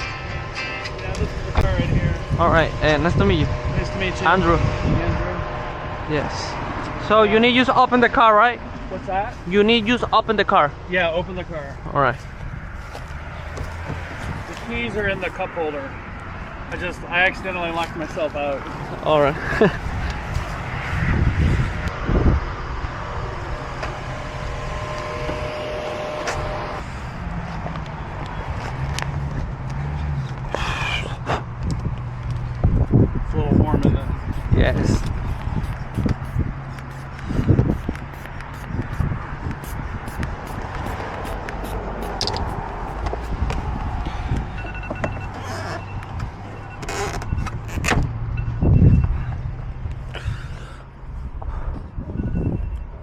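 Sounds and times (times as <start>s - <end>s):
steady low hum: 0.0s - 7.0s, 19.4s - 27.3s, 33.6s - 44.0s
vehicle engine rumble: 0.0s - 53.0s
short electronic beeps: 44.6s - 47.6s, 48.3s - 49.2s, 52.2s - 53.0s.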